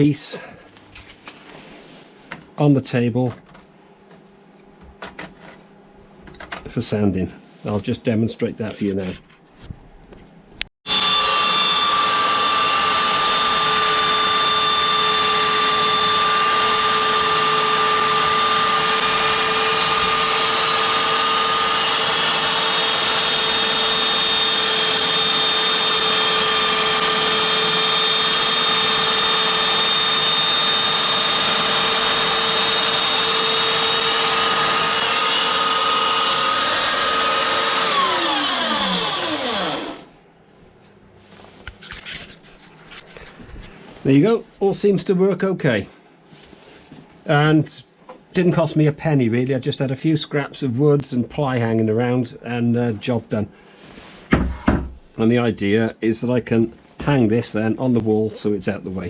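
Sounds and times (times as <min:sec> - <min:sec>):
belt sander whining: 0:10.8 - 0:40.1.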